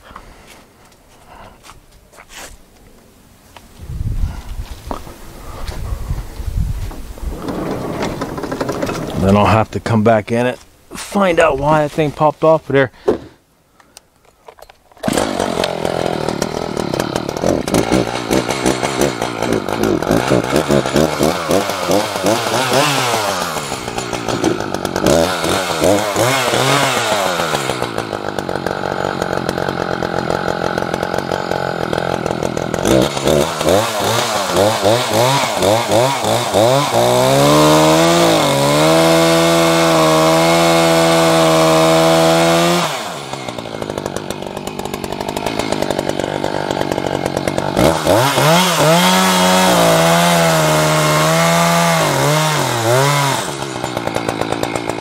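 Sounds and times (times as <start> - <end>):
small gasoline engine revving: 7.1 - 9.6, 15.0 - 55.0.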